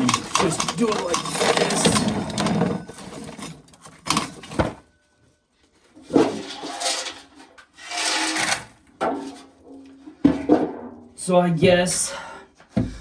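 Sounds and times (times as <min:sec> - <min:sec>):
corn kernels rattling: 0:00.0 - 0:04.4.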